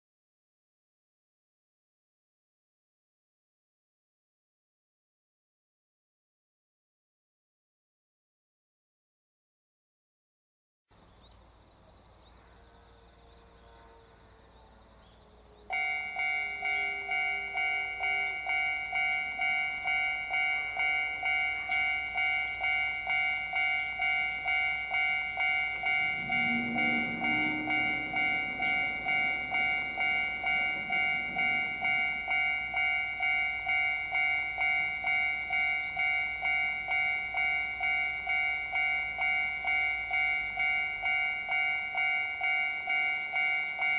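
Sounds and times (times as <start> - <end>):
level crossing electronic bell: 15.7 - 43.9.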